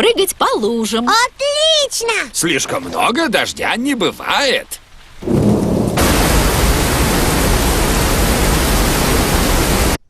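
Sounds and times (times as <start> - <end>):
heavy rain rushing hiss: 2.4 - 10.0
low rumble: 5.2 - 8.3.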